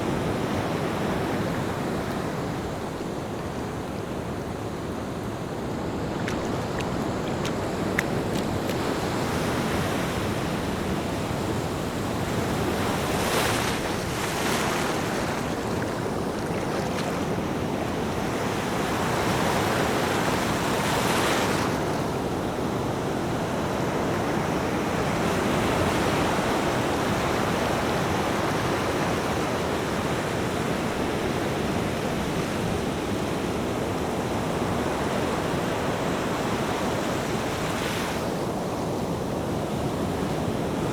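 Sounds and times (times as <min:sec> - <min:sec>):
ocean surf washing ashore: 0:00.0 - 0:40.9.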